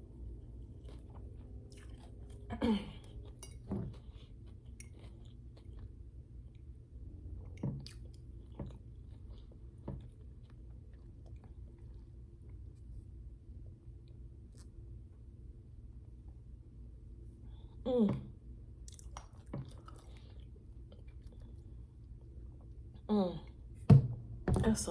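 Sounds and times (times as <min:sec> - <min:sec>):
chewing food: 0:00.2 - 0:13.1, 0:18.8 - 0:22.8.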